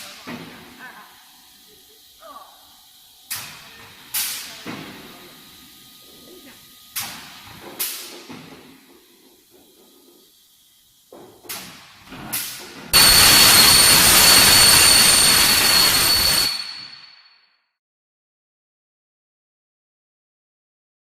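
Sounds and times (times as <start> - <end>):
short sharp machine hisses: 12.4 - 17.0
loud whistling hiss: 12.9 - 17.2.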